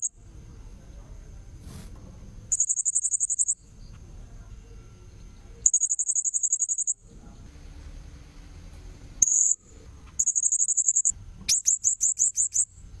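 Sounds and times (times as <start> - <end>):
faint high whine: 0.0 - 13.0
low background rumble: 0.1 - 5.8, 7.0 - 13.0.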